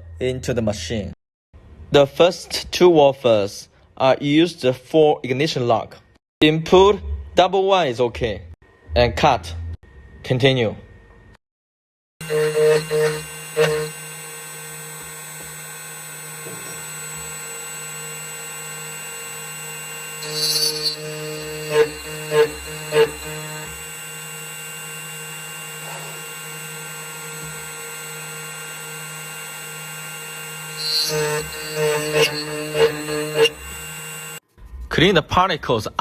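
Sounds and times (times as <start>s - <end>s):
key cutting machine running: 12.2s - 34.4s
motor hum: 12.2s - 34.4s.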